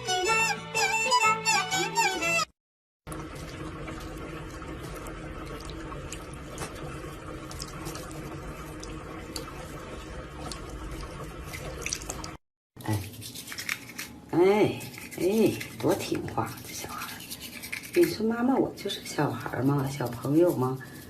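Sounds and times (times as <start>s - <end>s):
tap water running: 3.0s - 14.0s
small ticks and drips: 3.1s - 6.8s, 7.4s - 9.6s, 10.4s - 12.4s.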